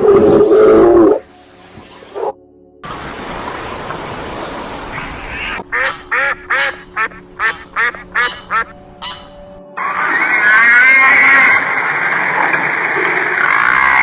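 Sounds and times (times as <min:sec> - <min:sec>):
animal quacking calls: 0:05.2 - 0:11.7.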